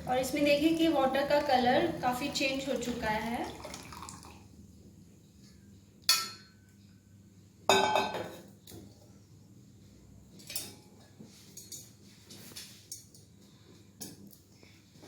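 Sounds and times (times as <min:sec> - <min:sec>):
kitchenware clinking: 0:06.1 - 0:06.6, 0:07.7 - 0:08.4.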